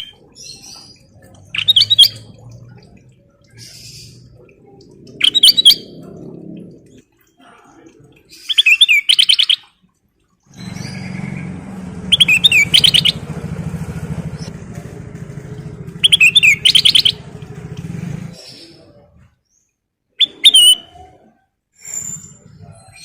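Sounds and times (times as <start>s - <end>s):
bulbul singing warbled phrases: 0.0s - 9.7s, 10.5s - 14.6s, 15.9s - 17.4s
low motor drone: 0.1s - 7.1s, 10.5s - 18.5s.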